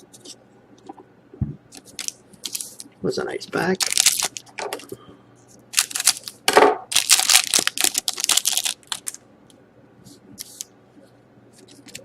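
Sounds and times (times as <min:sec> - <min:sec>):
card wrapper crinkling and tearing: 0:01.8 - 0:02.8, 0:03.8 - 0:04.8, 0:05.7 - 0:09.2.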